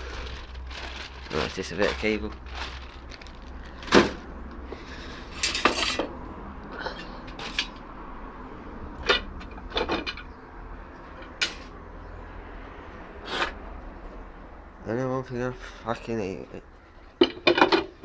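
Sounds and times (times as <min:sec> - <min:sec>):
scrap metal clanking: 0:00.0 - 0:06.2, 0:06.8 - 0:07.9, 0:11.2 - 0:11.8, 0:13.2 - 0:13.6.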